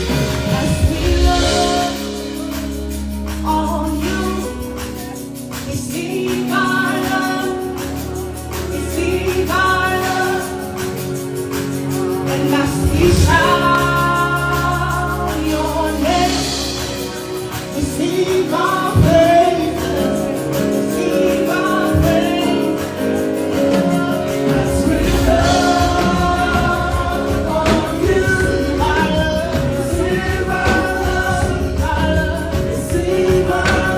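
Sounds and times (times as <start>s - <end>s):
bass: 0.0s - 33.9s
choir singing in harmony: 0.0s - 33.9s.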